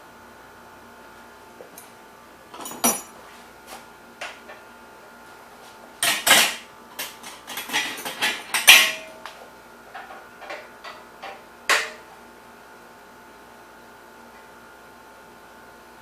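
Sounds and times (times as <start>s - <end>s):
metal tools clanking: 2.5s - 3.2s, 7.5s - 9.2s.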